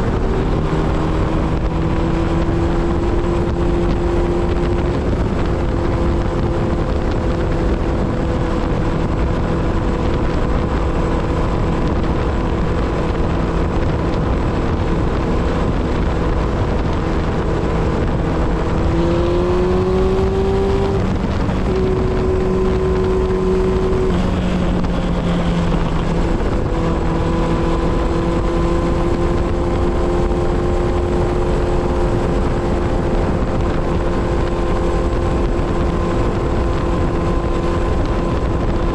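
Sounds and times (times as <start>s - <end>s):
motorcycle engine cruising: 0.0s - 38.9s.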